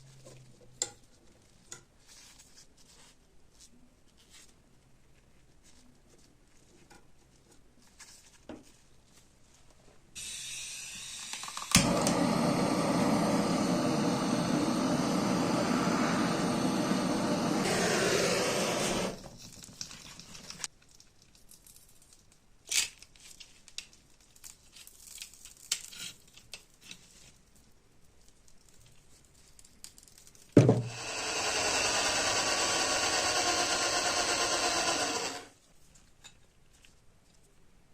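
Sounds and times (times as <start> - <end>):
electric power tool running: 10.2 - 19.7, 30.6 - 35.5.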